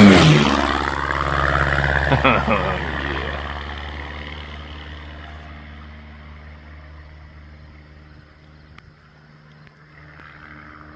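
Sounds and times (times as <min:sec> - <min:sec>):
propeller airplane engine droning: 0:00.0 - 0:10.9.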